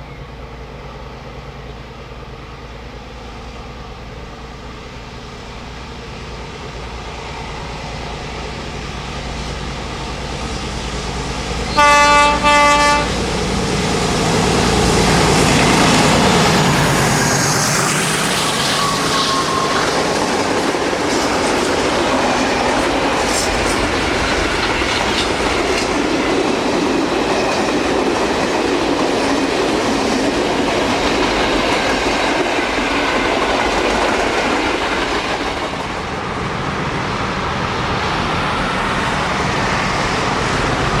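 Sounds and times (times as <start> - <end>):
locomotive engine passing: 0.0 - 41.0
train wagons rolling: 6.0 - 41.0
train horn blasts: 11.7 - 13.3.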